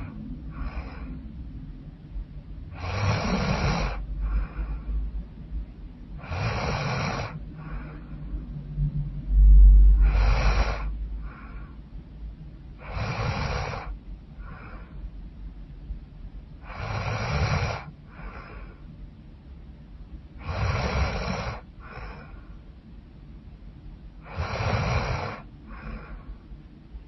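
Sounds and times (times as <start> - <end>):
deep low rumble: 0.0 - 6.2, 7.4 - 16.6
woman snoring loudly: 2.8 - 4.0, 6.2 - 7.4, 10.0 - 10.9, 12.8 - 13.9, 16.7 - 17.9, 20.4 - 22.1, 24.3 - 25.5.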